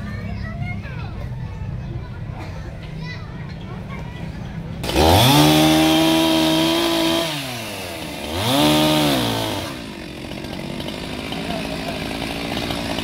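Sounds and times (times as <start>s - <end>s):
chainsaw engine revving: 4.8s - 13.0s.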